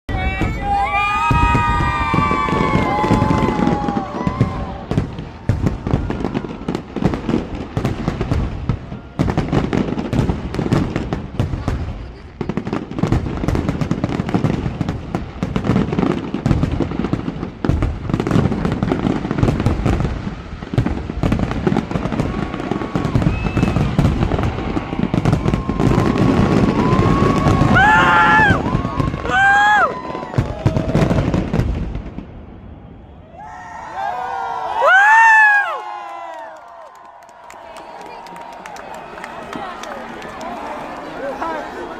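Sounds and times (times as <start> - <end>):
fireworks bangs and crackling: 0.1 - 33.2.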